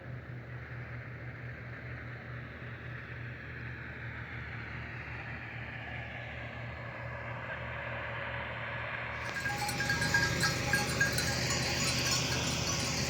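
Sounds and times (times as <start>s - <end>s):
vehicle engine droning: 6.5s - 13.0s.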